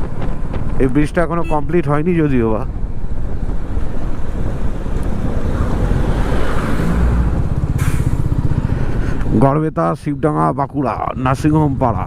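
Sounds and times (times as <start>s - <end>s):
wind buffeting microphone: 0.0s - 1.3s, 2.0s - 9.4s
motorcycle engine running: 7.3s - 9.3s.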